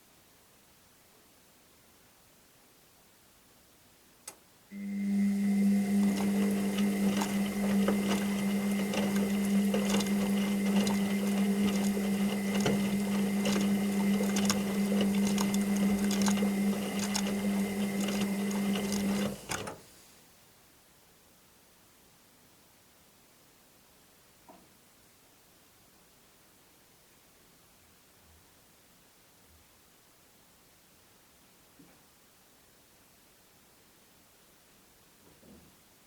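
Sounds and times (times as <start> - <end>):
washing machine running: 4.7 - 19.8.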